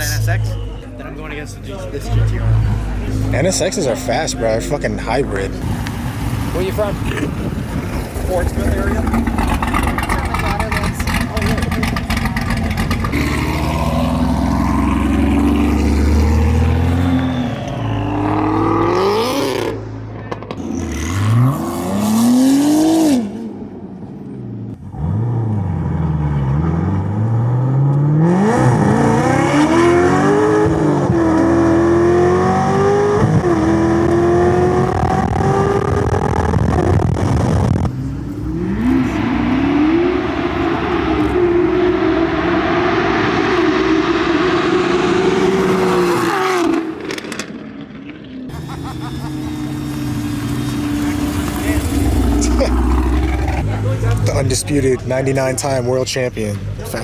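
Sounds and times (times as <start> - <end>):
car engine revving: 0.0 - 57.0.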